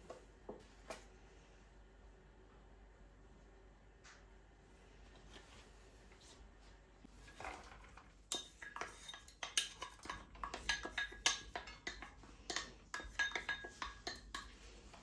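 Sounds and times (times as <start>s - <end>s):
utensils clinking against dishes: 7.3s - 14.7s.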